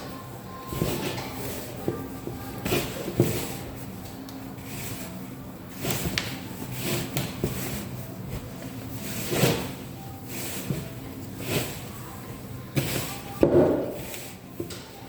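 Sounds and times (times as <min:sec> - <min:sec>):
batter mixing scrapes and knocks: 0:00.6 - 0:14.9.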